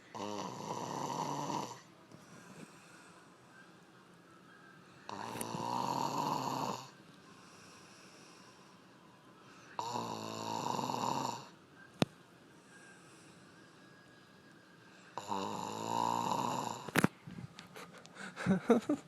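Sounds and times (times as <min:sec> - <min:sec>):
person snoring: 0:00.1 - 0:01.9, 0:05.1 - 0:08.5, 0:09.8 - 0:11.5, 0:15.2 - 0:17.0.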